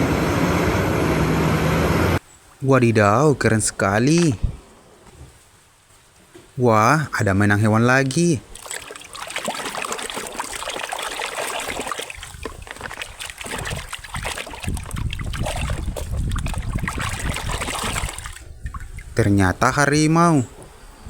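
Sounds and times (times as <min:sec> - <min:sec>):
water running and splashing: 0:07.6 - 0:19.7.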